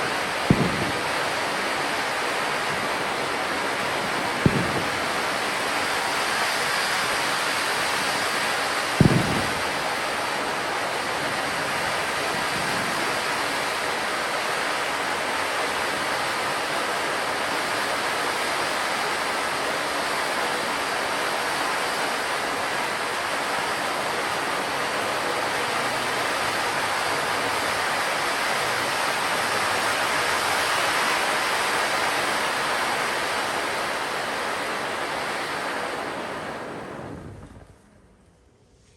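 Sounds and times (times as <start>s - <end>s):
fountain firework hissing: 0.0s - 38.2s
sharp firework pop: 0.5s - 1.2s, 4.4s - 5.2s, 9.0s - 9.8s.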